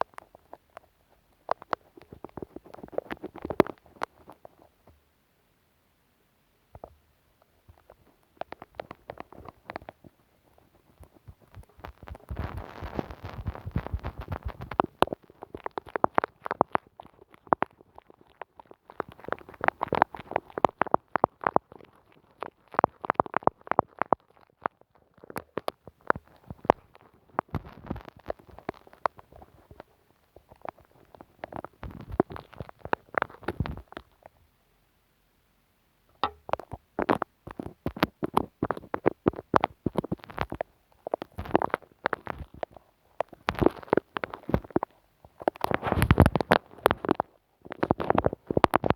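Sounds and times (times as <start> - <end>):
sticky glue and tape crackling: 7.7 - 34.2.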